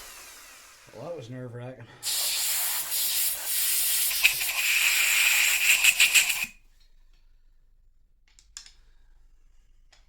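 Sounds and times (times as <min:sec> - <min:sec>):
compressed-air blow gun hissing: 0:00.0 - 0:01.2, 0:02.0 - 0:06.6.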